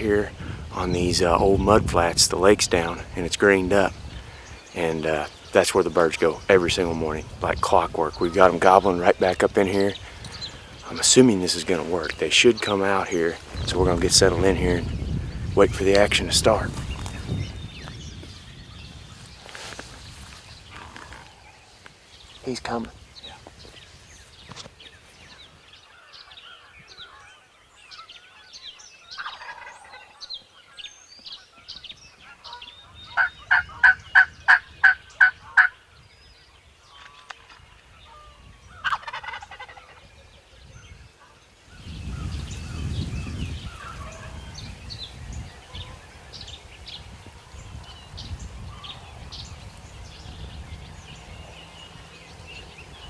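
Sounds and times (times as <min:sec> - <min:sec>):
wind rumble: 0:00.0 - 0:27.0, 0:31.8 - 0:53.0
songbird chirps: 0:00.0 - 0:53.0
turkey yelps: 0:29.2 - 0:30.2, 0:32.5 - 0:35.8, 0:38.1 - 0:40.0
turkey gobbling: 0:29.2 - 0:30.3, 0:32.5 - 0:35.8, 0:37.4 - 0:40.2, 0:43.7 - 0:44.4.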